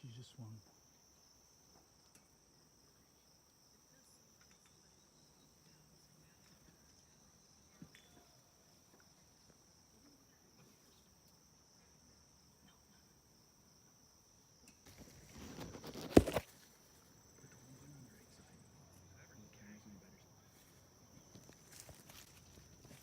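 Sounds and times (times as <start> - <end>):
crickets chirring: 0.0 - 23.0.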